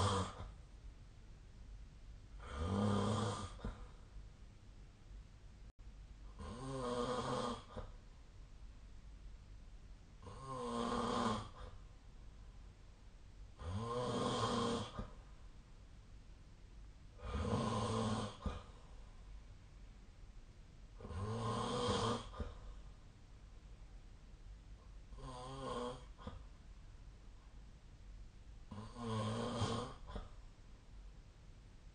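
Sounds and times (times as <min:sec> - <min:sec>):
person snoring: 0:00.0 - 0:00.5, 0:02.4 - 0:04.0, 0:06.4 - 0:07.9, 0:10.2 - 0:11.8, 0:13.6 - 0:15.2, 0:17.2 - 0:18.8, 0:21.0 - 0:22.6, 0:25.1 - 0:26.4, 0:28.7 - 0:30.3.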